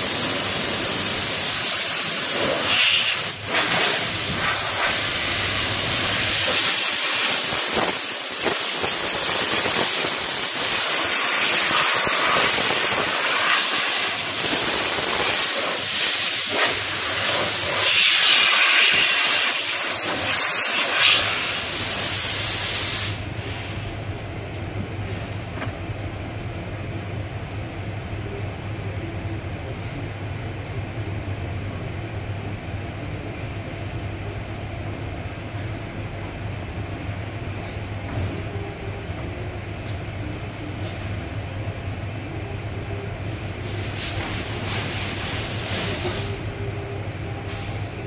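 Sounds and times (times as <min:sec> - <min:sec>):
compressed air hissing: 0:00.0 - 0:23.3, 0:43.6 - 0:46.4
low steady hum: 0:23.2 - 0:43.9, 0:46.3 - 0:48.0.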